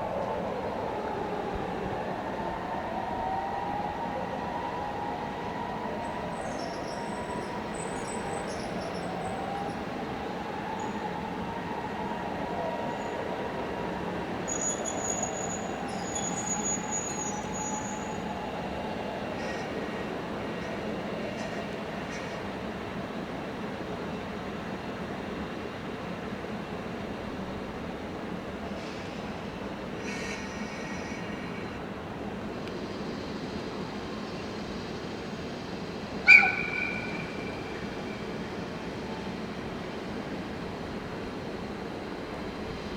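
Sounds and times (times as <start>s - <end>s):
electric train moving slowly: 0.0s - 42.9s
siren wailing: 0.2s - 19.2s.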